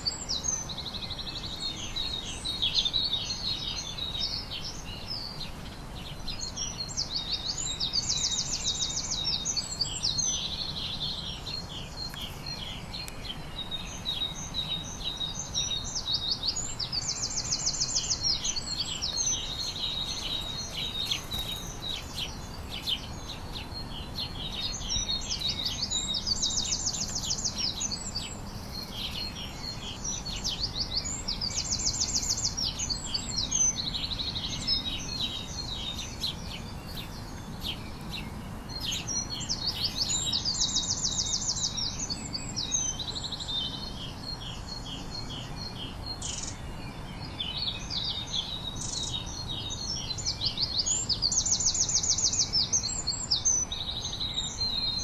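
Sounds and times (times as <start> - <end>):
songbirds chirping: 0.0 - 55.0
bird trill: 13.7 - 41.5.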